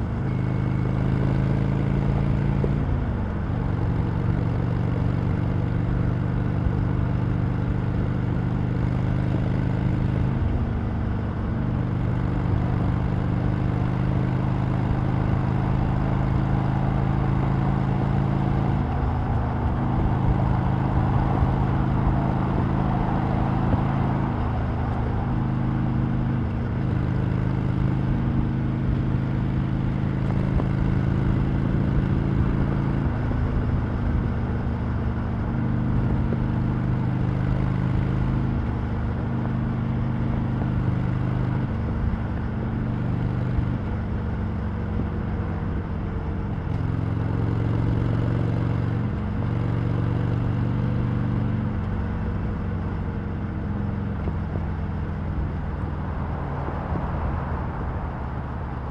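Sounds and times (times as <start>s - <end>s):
motorcycle engine running: 0.0s - 58.9s.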